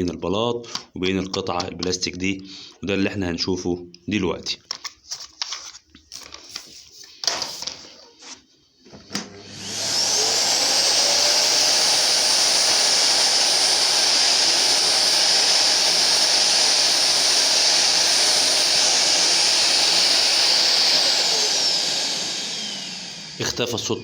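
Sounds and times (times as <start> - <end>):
vacuum cleaner motor running: 9.0 - 24.0.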